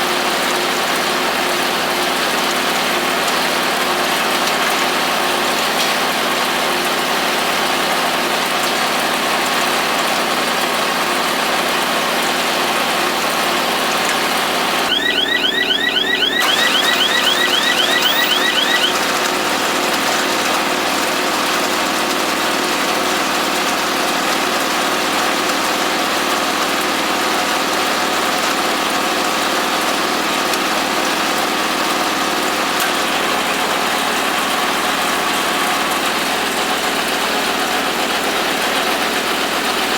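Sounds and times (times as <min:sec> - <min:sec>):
short high chirps: 0:14.9 - 0:19.0.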